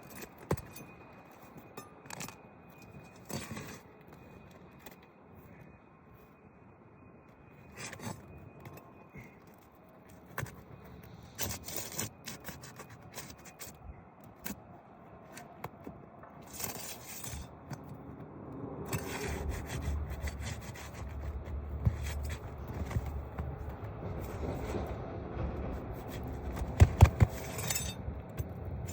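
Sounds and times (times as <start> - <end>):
pry bar scraping roof shingles: 0.0 - 5.0, 7.7 - 18.2, 18.9 - 28.9
low rumble: 21.3 - 28.8.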